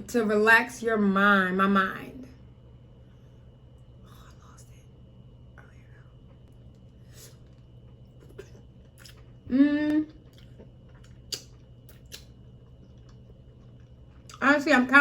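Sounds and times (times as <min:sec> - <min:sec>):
eating clicks: 0:08.2 - 0:14.4
woman humming: 0:09.4 - 0:10.3.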